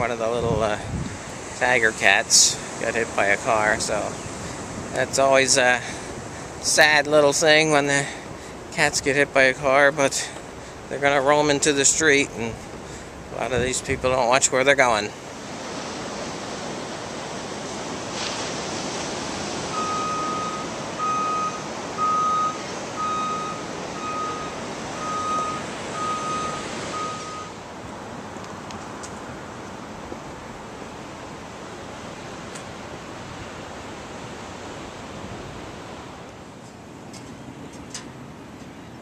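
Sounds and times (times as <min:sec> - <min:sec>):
vehicle reversing alarm beeps: 0:19.7 - 0:27.6.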